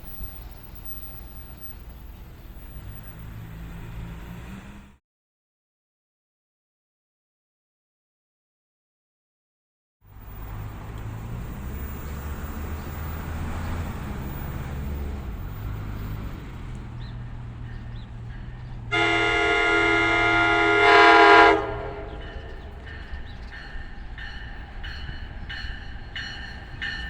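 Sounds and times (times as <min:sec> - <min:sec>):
train horn chord blast: 0:17.4 - 0:23.9.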